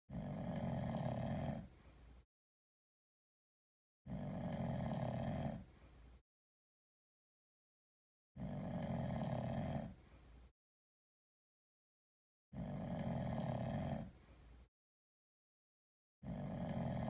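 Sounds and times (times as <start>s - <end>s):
cat snoring: 0.1s - 1.7s, 4.1s - 5.7s, 8.4s - 10.0s, 12.6s - 14.1s, 16.2s - 17.0s.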